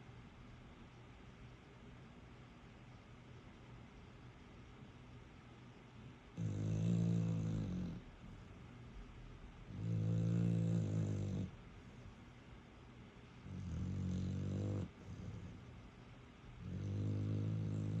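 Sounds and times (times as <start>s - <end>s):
dog snoring loudly: 6.4s - 8.2s, 9.7s - 11.6s, 13.4s - 15.7s, 16.6s - 18.0s.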